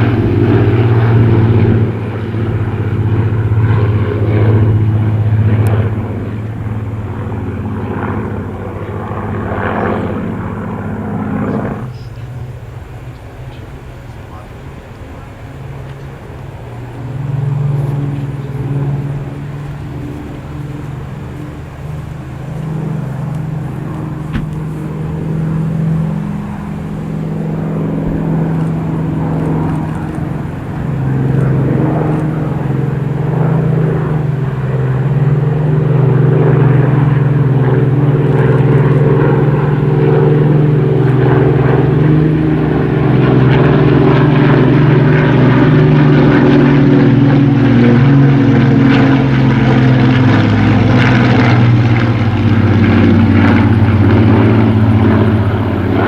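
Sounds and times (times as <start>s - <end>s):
propeller aircraft engine drone: 0.0s - 56.0s.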